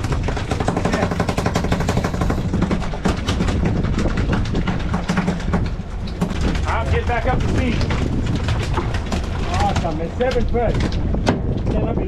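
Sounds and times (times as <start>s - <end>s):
boat engine running: 0.0s - 6.3s
rattling knocks and clicks on deck: 0.0s - 11.8s.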